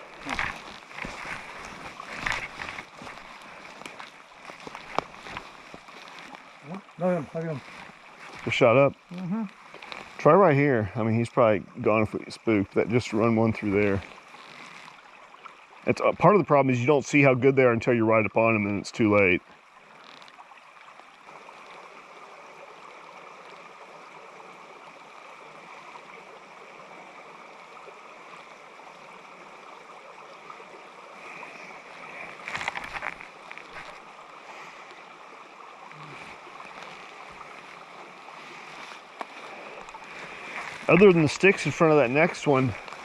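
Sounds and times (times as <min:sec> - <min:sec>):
stream running over rocks: 0:00.0 - 0:43.0
clicks and rustles: 0:00.2 - 0:06.4, 0:32.4 - 0:34.0.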